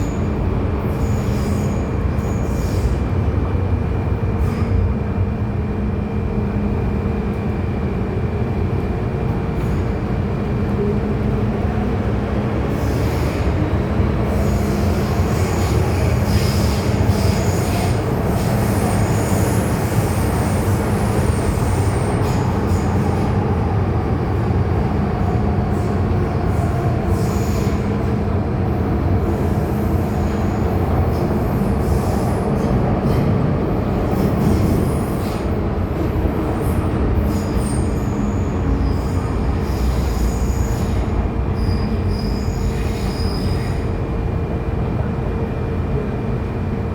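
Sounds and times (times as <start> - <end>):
wheels rumbling on rail: 0.0 - 46.9
high wheel squeal: 37.2 - 43.9.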